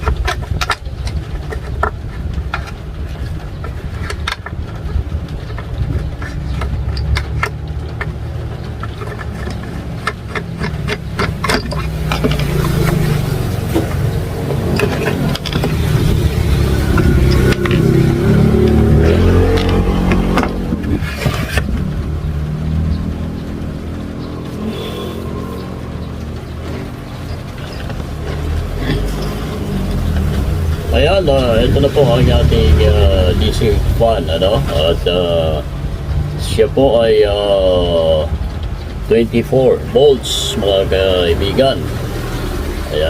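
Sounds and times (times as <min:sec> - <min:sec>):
small clicks and clatter: 0:00.0 - 0:13.9
vehicle engine passing: 0:03.1 - 0:43.0.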